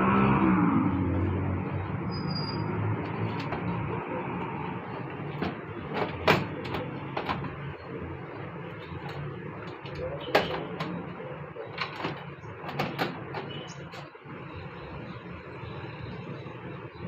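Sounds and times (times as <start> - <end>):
hard parts clicking and knocking: 2.8 - 14.5.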